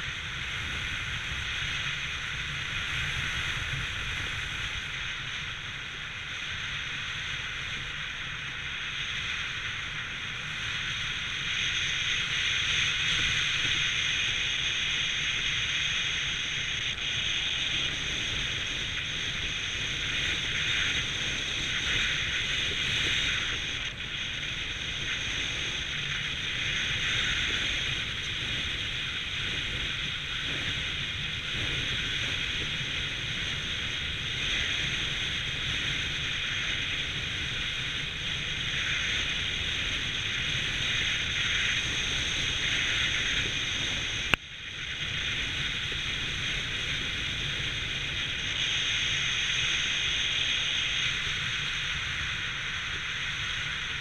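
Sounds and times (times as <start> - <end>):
wind rushing over microphone: 0.0 - 54.0.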